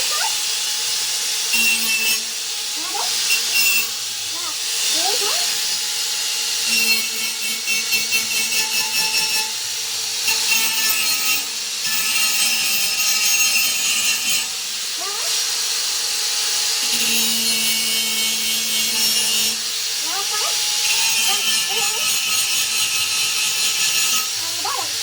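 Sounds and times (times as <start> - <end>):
tool grinding steel: 0.0 - 25.0.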